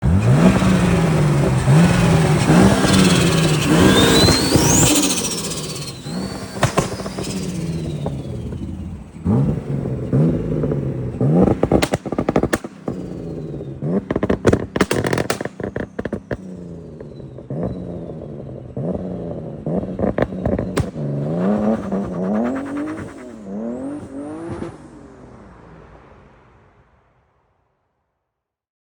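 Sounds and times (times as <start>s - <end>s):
exhaust crackling pops: 0.0s - 24.8s
car engine revving: 0.0s - 26.6s
turbo whistle: 2.6s - 8.3s.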